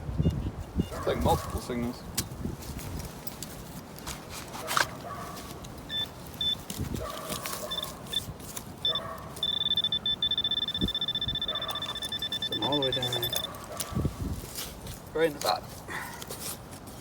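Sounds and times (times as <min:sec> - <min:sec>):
metal detector beeps: 0:00.2 - 0:01.1, 0:05.9 - 0:06.7, 0:07.3 - 0:13.6
metal detector steady tone: 0:05.9 - 0:06.8, 0:07.4 - 0:13.6.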